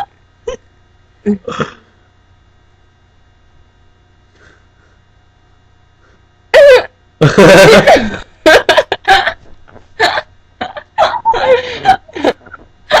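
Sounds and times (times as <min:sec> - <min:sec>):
woman making vocal noises: 0:01.3 - 0:01.9.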